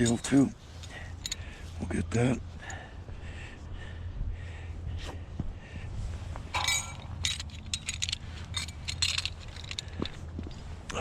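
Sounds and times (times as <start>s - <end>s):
scrap steel clinking: 0.0s - 1.6s, 6.5s - 10.2s.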